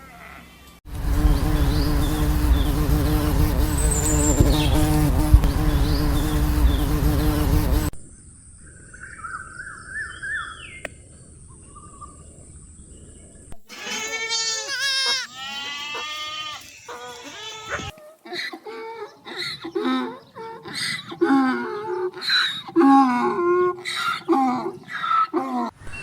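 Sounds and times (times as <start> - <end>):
insect buzzing: 0.9 - 7.9
goat bleating: 13.7 - 17.9.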